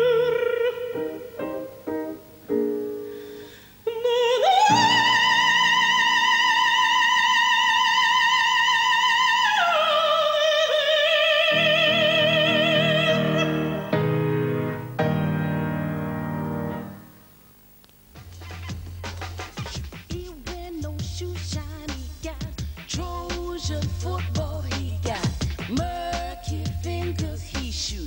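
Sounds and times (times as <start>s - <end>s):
woman singing operatically: 0.0s - 1.5s, 3.9s - 14.0s, 20.1s - 28.0s
piano accompaniment: 0.0s - 3.4s, 11.5s - 17.3s.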